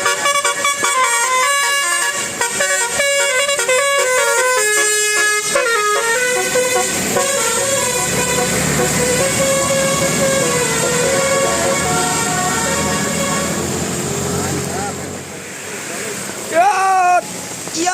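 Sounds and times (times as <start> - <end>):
musical vehicle horn melody: 0.0 - 13.8.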